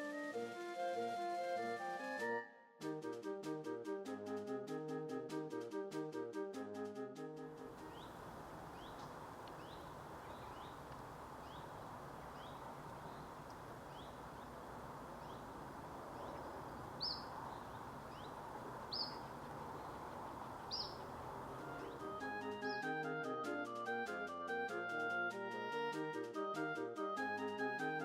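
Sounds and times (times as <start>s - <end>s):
steady background hiss: 7.7s - 28.0s
small songbirds calling: 7.8s - 23.0s.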